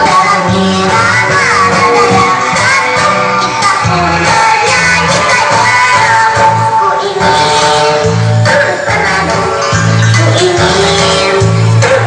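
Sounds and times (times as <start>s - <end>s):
steady bass pattern: 0.0s - 5.8s
person singing: 0.0s - 12.0s.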